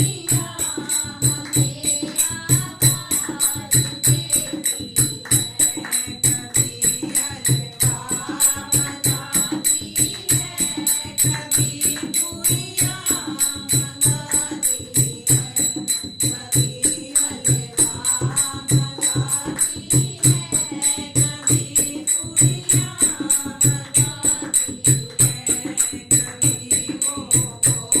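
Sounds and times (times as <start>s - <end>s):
jingling percussion: 0.0s - 28.0s.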